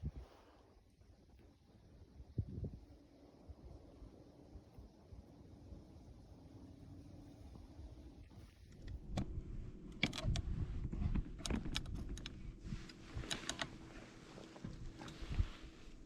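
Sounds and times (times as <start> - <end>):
faint steady hum: 0.0 - 16.0
small clicks and rustles: 8.3 - 16.0.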